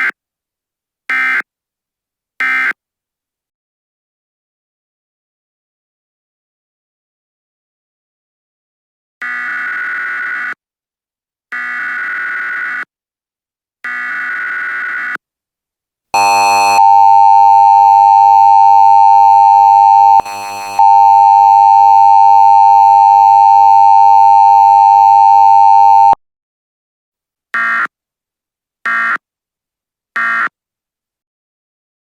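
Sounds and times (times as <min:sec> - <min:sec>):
short data bursts: 0:16.2 - 0:26.2
steady electronic attention tone: 0:16.2 - 0:26.2.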